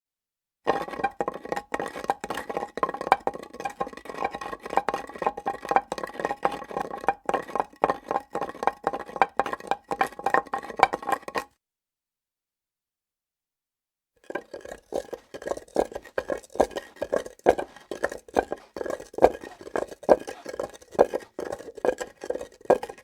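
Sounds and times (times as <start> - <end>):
hard objects clacking on granite: 0.7 - 11.5, 14.2 - 23.0.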